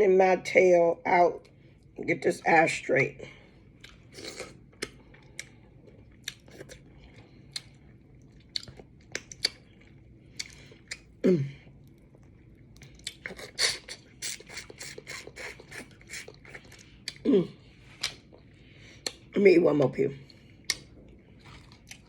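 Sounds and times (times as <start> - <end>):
person chewing with wet mouth clicks: 3.8 - 11.1, 11.8 - 17.2, 17.9 - 19.3, 20.6 - 22.0.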